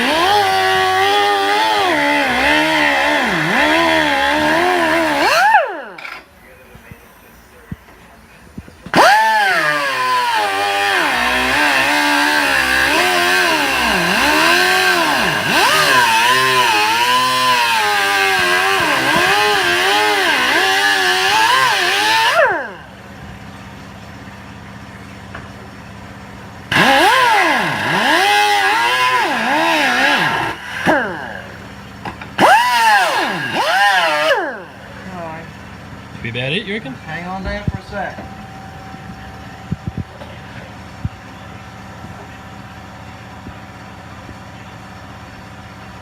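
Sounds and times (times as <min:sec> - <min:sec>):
angle grinder cutting steel: 0:00.0 - 0:06.3, 0:08.9 - 0:22.9, 0:26.7 - 0:35.1.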